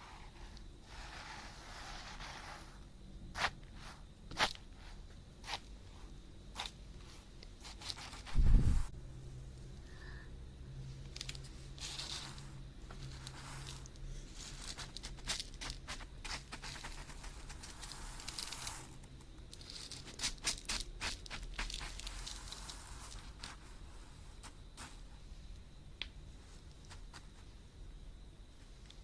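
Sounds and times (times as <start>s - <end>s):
soft hissing rubs: 0.0s - 9.0s, 10.9s - 25.6s, 26.3s - 27.7s.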